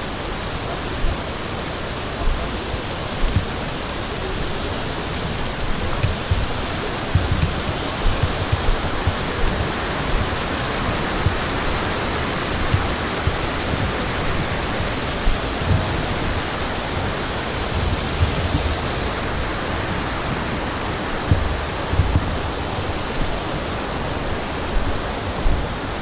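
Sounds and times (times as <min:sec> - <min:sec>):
stream rushing over rocks: 0:00.0 - 0:26.0
short low thumps: 0:05.2 - 0:11.8, 0:12.5 - 0:16.4, 0:21.2 - 0:23.4.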